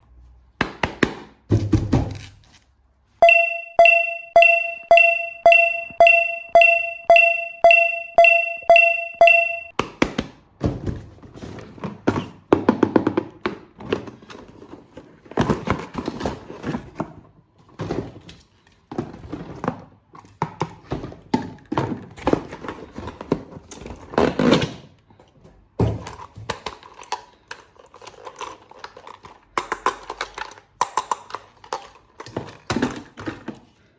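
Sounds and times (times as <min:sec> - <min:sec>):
short electronic beeps: 0:03.2 - 0:09.7
plastic packaging clicks and rustling: 0:25.8 - 0:33.8.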